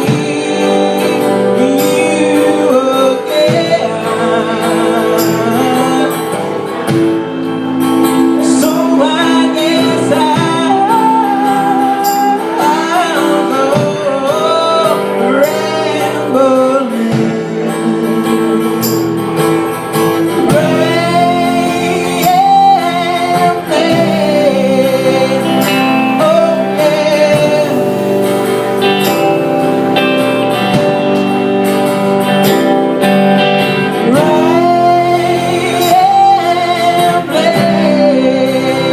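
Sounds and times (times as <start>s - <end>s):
plucked and strummed guitar: 0.0s - 38.9s
woman singing: 34.0s - 38.9s.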